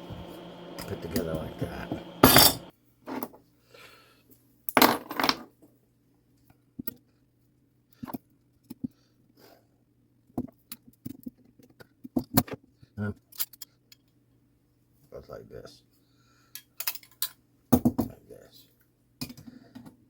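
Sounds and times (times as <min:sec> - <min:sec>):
small metal parts clinking: 0:16.6 - 0:17.4.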